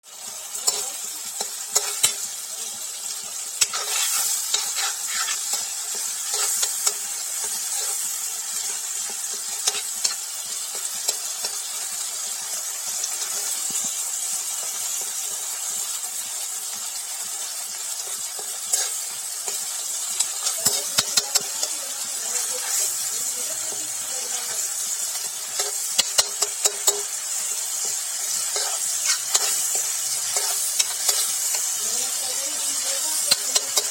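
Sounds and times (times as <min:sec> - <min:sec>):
food sizzling in oil: 0:00.0 - 0:33.9
spoon scraping pan: 0:03.6 - 0:10.2, 0:18.3 - 0:33.9.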